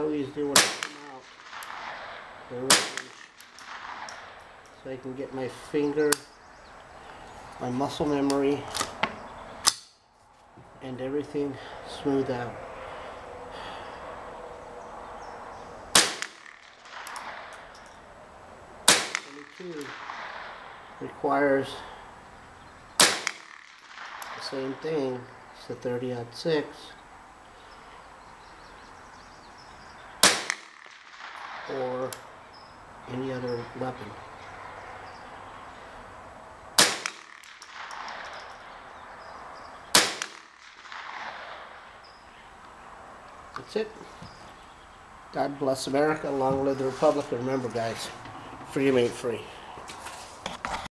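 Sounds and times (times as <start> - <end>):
rifle shot: 0.5 - 4.6, 15.9 - 17.7, 18.8 - 20.8, 23.0 - 24.6, 30.2 - 31.8, 36.8 - 38.5, 39.9 - 42.0.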